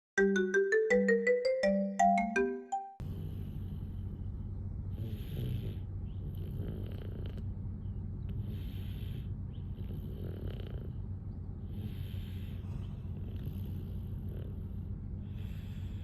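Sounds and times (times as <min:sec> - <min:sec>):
jingle of rising notes: 0:00.2 - 0:03.0
toddler snoring: 0:03.0 - 0:07.6, 0:08.2 - 0:16.0
steady low hum: 0:03.0 - 0:16.0.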